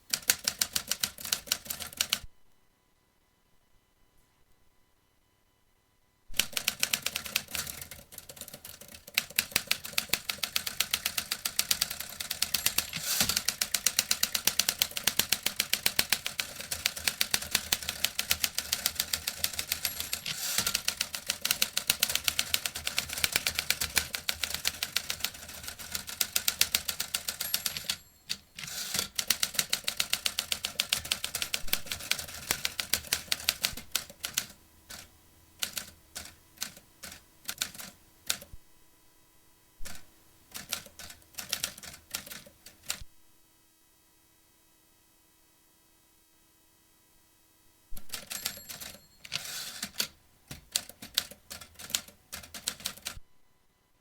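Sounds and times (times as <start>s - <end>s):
typewriter key strikes: 9.4s - 25.5s, 26.1s - 33.7s.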